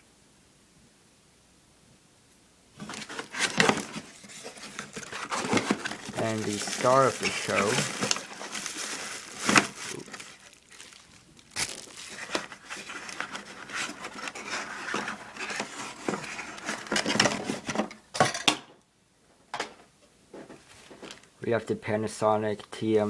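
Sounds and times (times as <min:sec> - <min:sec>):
plastic packaging crinkling: 0:02.8 - 0:17.8.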